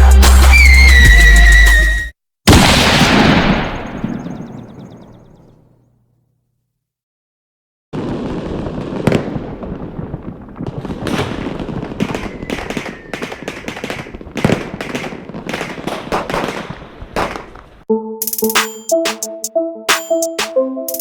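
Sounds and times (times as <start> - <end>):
firecracker bangs: 2.5 - 4.5, 8.0 - 17.7
firecrackers crackling: 8.0 - 17.8.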